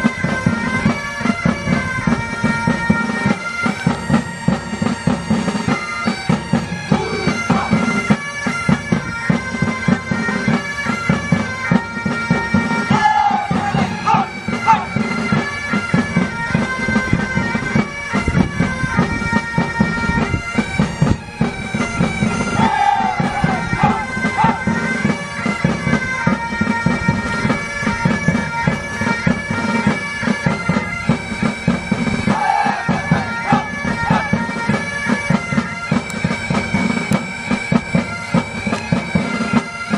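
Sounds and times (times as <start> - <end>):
bagpipes playing a tune: 0.0 - 39.9
drums beating quickly: 6.3 - 8.1, 22.2 - 24.9, 31.6 - 35.4.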